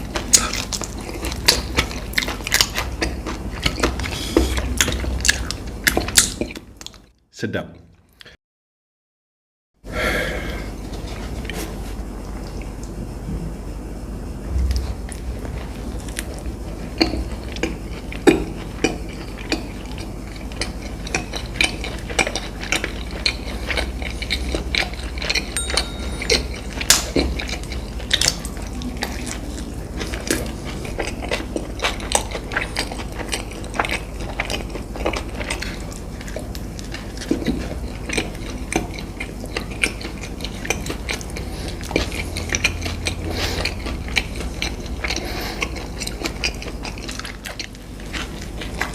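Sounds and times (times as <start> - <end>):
food being chewed: 0.0 - 7.1, 10.7 - 13.0, 14.6 - 48.9.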